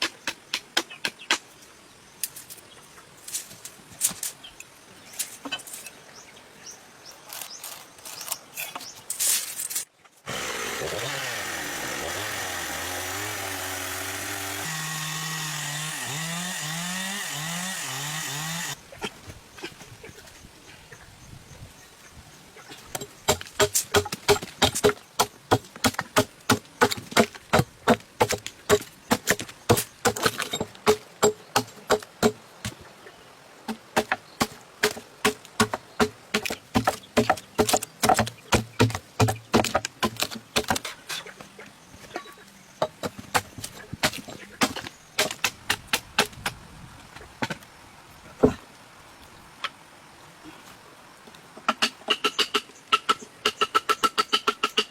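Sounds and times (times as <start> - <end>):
hand tool striking wood: 10.3 - 18.8, 33.7 - 41.0.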